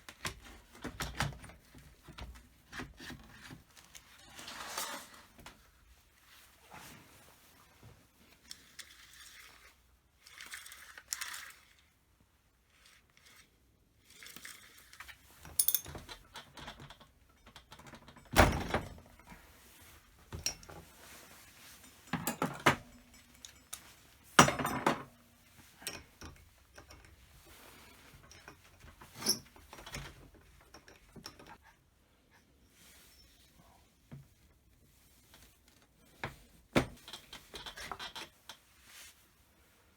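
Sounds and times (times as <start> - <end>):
rubbing or scraping: 3.1 - 5.4
metal tools clinking: 15.4 - 19.4, 20.3 - 27.2.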